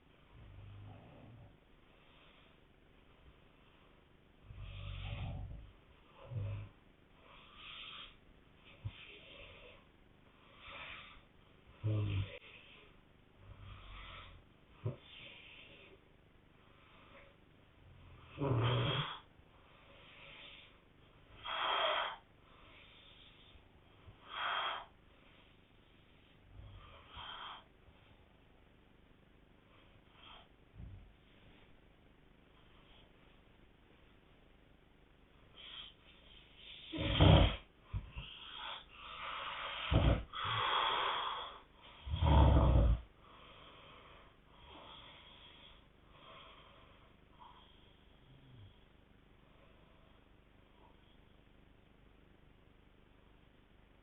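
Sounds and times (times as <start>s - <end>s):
faint breathing: 0.0s - 34.3s, 35.1s - 51.6s
loud snores: 4.4s - 9.9s, 10.5s - 12.8s, 13.4s - 15.9s, 17.8s - 19.3s, 21.3s - 23.2s, 24.2s - 24.9s, 36.6s - 43.1s.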